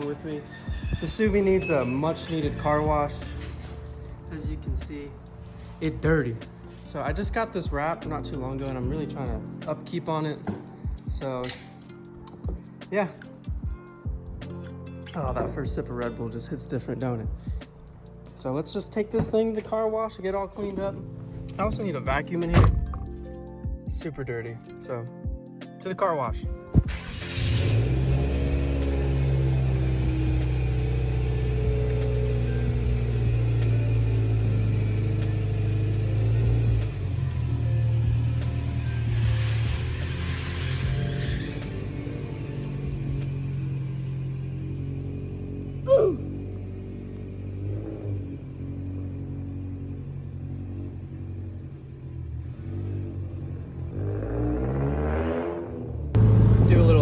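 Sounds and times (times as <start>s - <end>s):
car engine accelerating: 26.7s - 57.0s.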